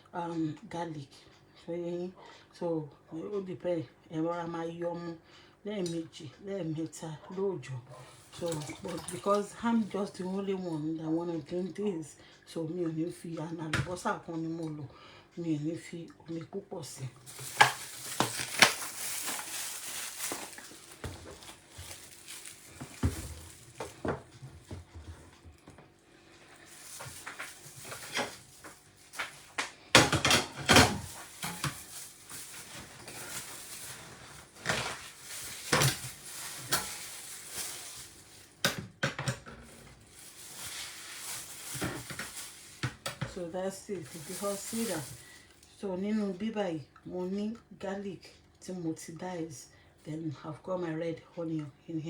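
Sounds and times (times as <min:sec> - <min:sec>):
quiet handling sounds: 0:17.0 - 0:45.7.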